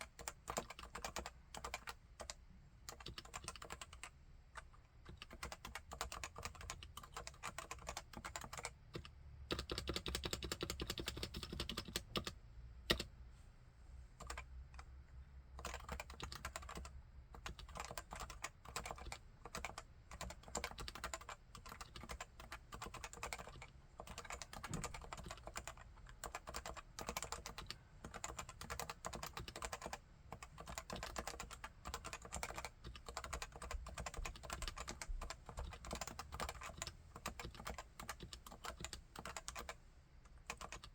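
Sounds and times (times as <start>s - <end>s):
keyboard typing: 0.0s - 13.1s, 14.2s - 14.5s, 15.6s - 40.9s.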